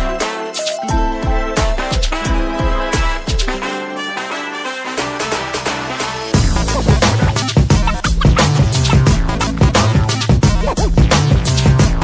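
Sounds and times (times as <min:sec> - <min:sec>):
sustained instrumental chords: 0:00.0 - 0:12.0
bass drum thumps: 0:06.4 - 0:12.0.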